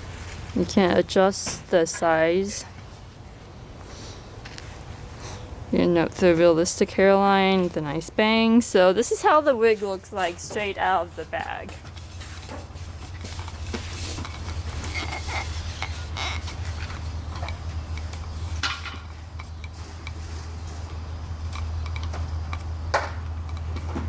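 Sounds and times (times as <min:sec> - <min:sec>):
steady low hum: 0:00.0 - 0:24.0
handling rustling and clicks: 0:11.3 - 0:24.0.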